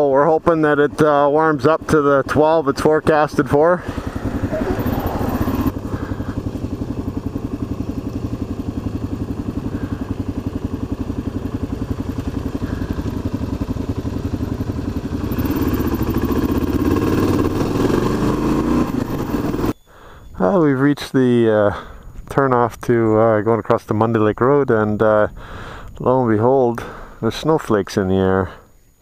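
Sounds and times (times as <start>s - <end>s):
motorcycle engine running: 0.0s - 19.8s.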